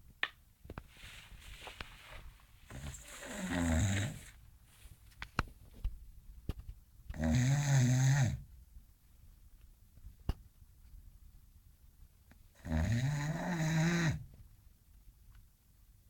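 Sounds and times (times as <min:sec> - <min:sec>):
dog snoring: 0:02.7 - 0:04.3, 0:07.1 - 0:08.5, 0:12.6 - 0:14.3.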